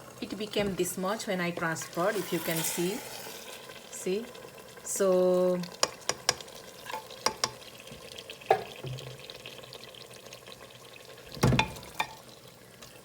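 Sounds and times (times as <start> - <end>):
faint sizzle: 0.0 - 13.0
metal spoon scraping a pot: 1.7 - 3.4.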